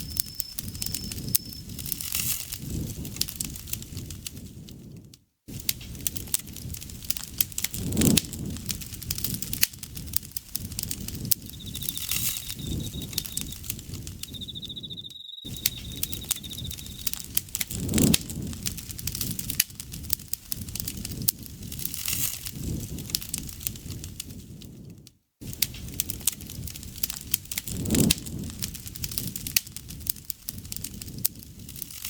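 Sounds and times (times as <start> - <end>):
insect trilling: 0.0 - 2.0, 11.2 - 17.3
campfire crackling and popping: 0.0 - 4.7, 5.5 - 24.8, 25.4 - 32.0
low rumble of flames: 0.0 - 32.0.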